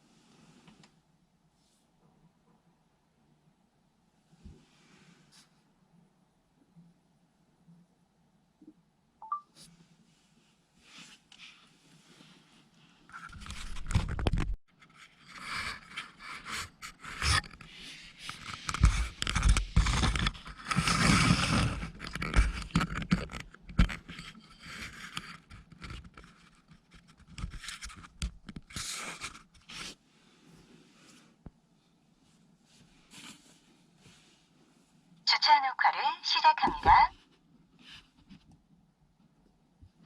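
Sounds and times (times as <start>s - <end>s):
scraping and rustling: 10.8s - 31.4s.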